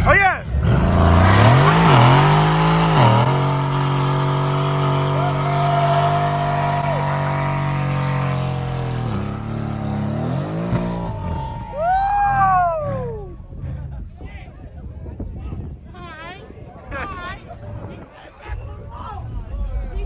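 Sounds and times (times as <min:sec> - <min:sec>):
car engine revving: 0:00.0 - 0:11.9.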